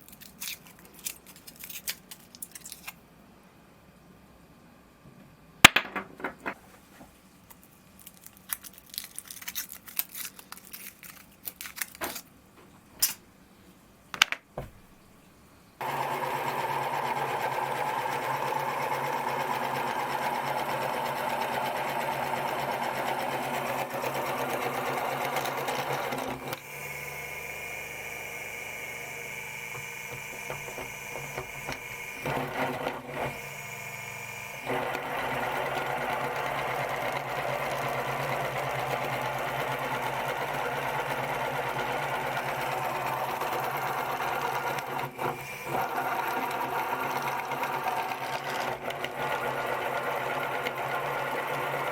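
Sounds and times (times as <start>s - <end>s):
electric meat grinder motor: 15.8s - 51.9s.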